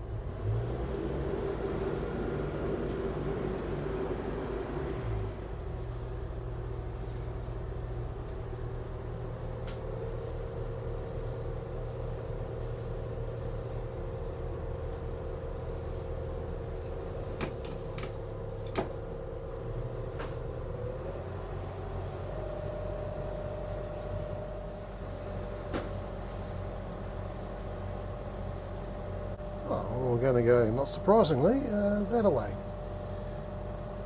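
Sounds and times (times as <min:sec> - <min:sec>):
diesel engine running: 0:00.0 - 0:34.0
steady whine: 0:21.6 - 0:34.0.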